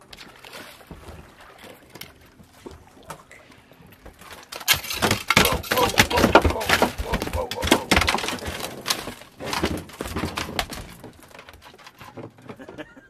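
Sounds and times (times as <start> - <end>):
splashing: 0.0 - 11.3
fish thumping in boat: 4.0 - 13.0.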